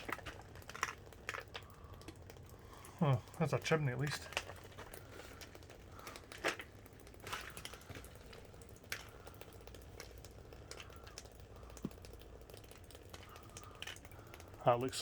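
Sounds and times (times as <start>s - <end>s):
footsteps on debris: 4.4s - 8.3s.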